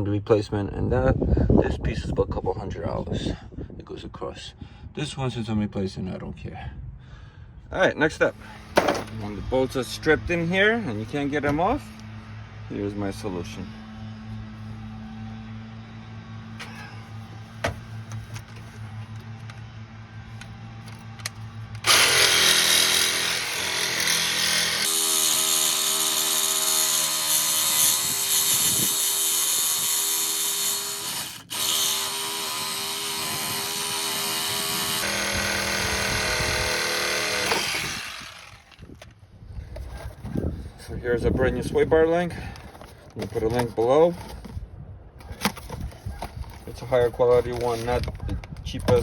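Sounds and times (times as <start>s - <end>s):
power tool cutting through bolt: 21.8s - 38.9s.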